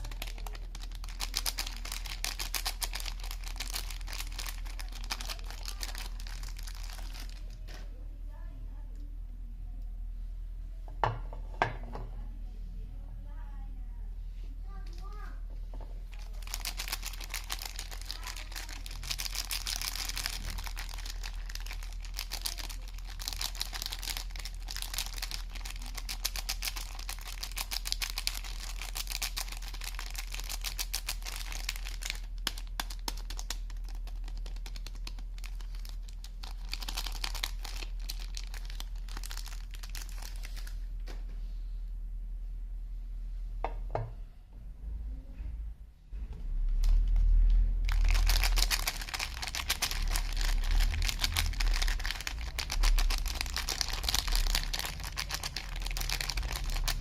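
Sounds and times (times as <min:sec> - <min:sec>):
wrapping torn and crinkled: 0:00.0 - 0:07.6, 0:16.1 - 0:40.9, 0:46.8 - 0:57.0.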